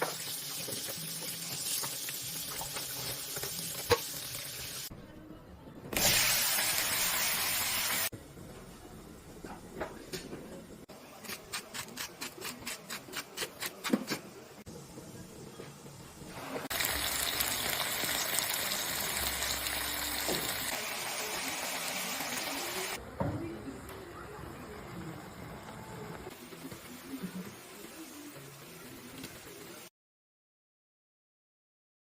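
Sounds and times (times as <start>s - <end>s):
food sizzling in frying pan: 0.0s - 4.9s, 6.0s - 8.1s, 16.4s - 23.0s.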